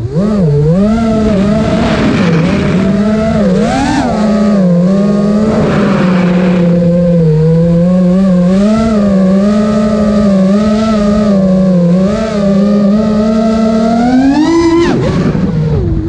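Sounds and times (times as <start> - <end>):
quadcopter motors buzzing: 0.0 - 16.0
rushing air burst: 5.4 - 7.1.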